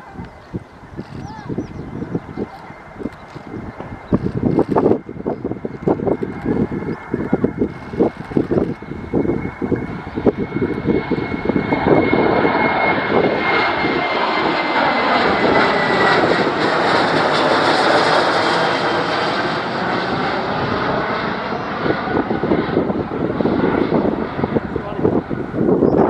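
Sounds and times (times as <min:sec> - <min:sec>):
high engine whine: 0:00.0 - 0:26.0
jet taking off: 0:00.0 - 0:26.0.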